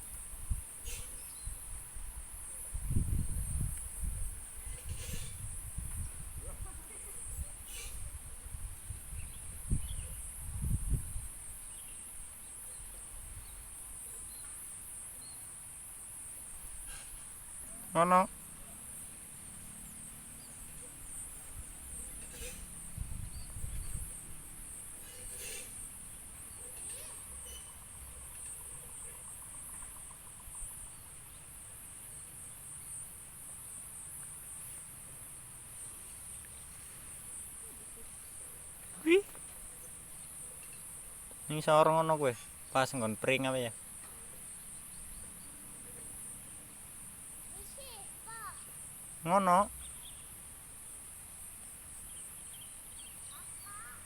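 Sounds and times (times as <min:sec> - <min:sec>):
crickets chirping: 0:00.0 - 0:54.0
insects trilling: 0:00.0 - 0:54.0.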